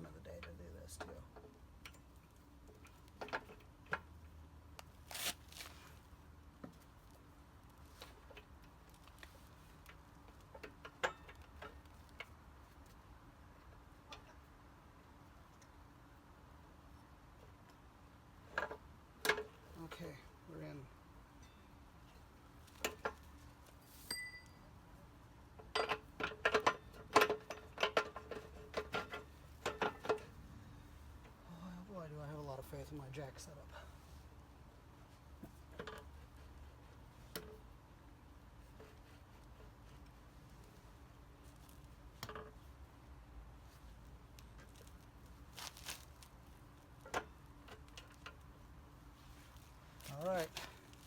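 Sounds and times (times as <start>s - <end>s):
single ringing metal clink: 24.0s - 24.7s.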